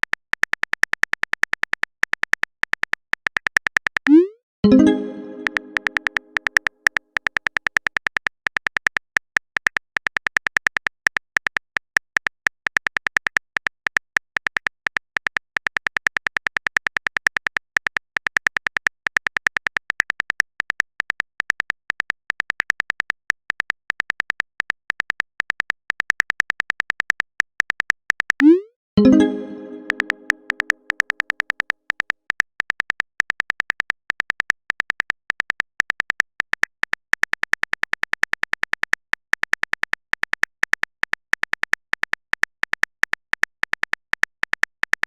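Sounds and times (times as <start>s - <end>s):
keyboard typing clicks: 4.0s - 6.7s, 28.4s - 31.6s
notification chime: 4.1s - 6.3s, 28.4s - 30.6s.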